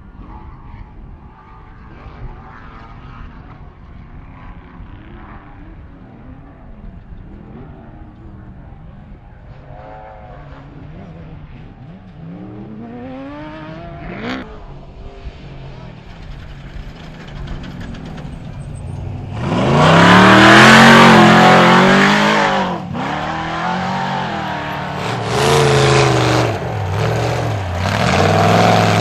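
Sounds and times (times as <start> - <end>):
race vehicle engines revving: 0.0 - 29.0.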